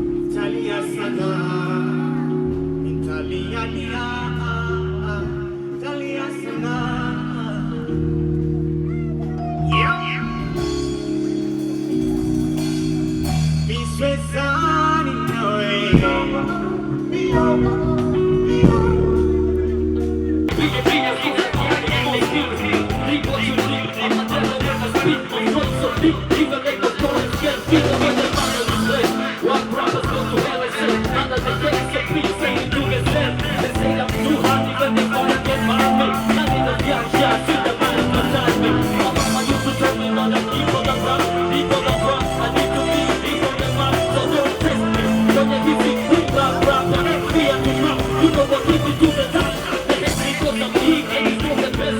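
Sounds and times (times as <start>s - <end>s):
band music with singing: 0.0s - 51.9s
held bass notes: 0.0s - 51.9s
drums: 10.4s - 51.9s.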